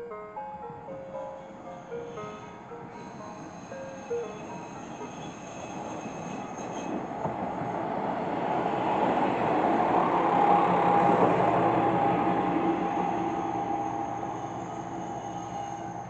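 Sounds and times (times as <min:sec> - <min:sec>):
train rumbling past: 0:00.0 - 0:16.0
wheel squeal: 0:02.0 - 0:07.0, 0:12.8 - 0:16.0.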